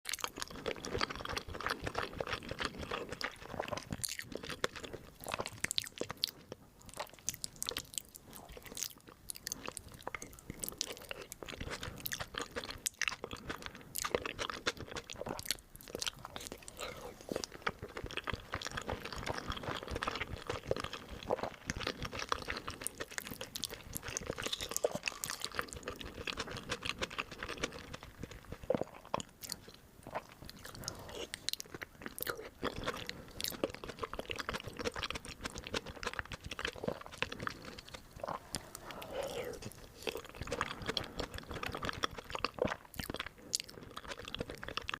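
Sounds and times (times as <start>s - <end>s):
chewing crisp food: 0.1s - 44.9s.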